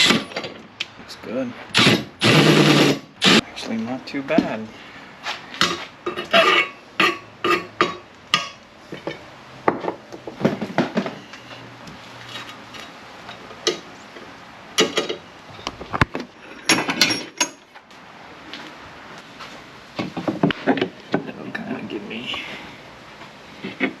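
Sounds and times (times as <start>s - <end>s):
tools clattering on workbench: 16.6s - 17.7s.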